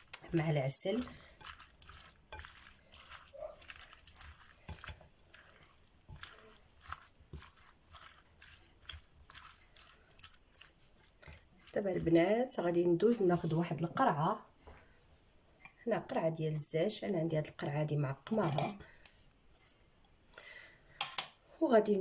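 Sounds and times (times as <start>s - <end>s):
sticky mixture being stirred: 0.0s - 14.8s.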